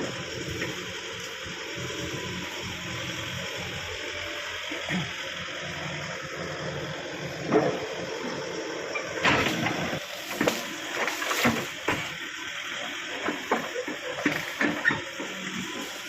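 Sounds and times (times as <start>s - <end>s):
backhoe engine running: 0.0s - 16.0s
sharp cracks and knocks: 10.3s - 12.1s.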